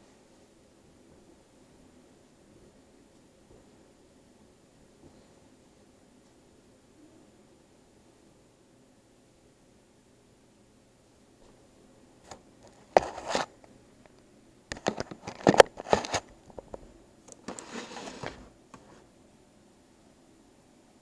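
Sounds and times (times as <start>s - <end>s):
rustling and scraping: 12.2s - 13.6s, 14.7s - 19.1s.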